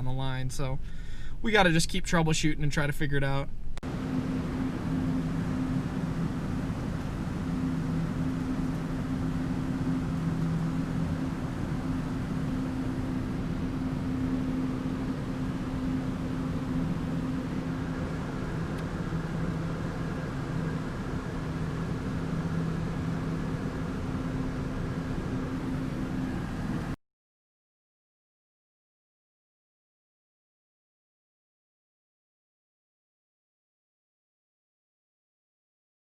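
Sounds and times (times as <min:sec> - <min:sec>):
farm machinery droning: 0:03.8 - 0:27.0.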